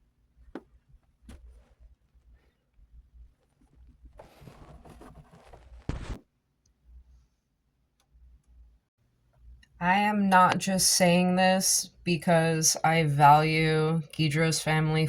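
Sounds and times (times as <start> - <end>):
objects rustling and scraping: 1.2 - 2.5, 3.4 - 6.2.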